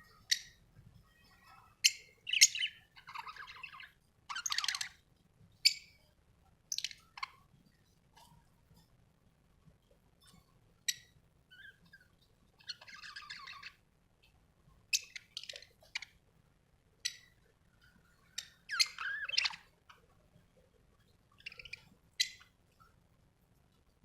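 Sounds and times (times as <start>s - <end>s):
budgerigar chirping: 1.8s - 5.0s, 10.9s - 13.8s, 14.9s - 16.2s, 18.2s - 19.7s, 21.4s - 22.5s.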